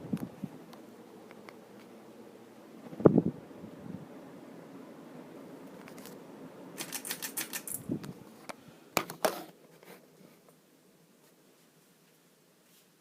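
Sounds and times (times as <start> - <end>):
ceiling fan humming: 0.0 - 13.0
sharp clicks: 6.8 - 7.8.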